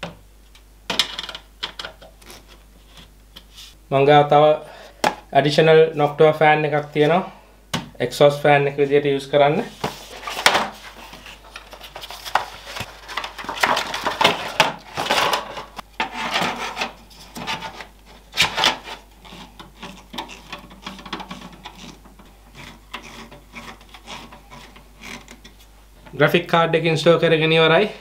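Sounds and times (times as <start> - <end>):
hands handling fan and case: 9.8 - 15.8.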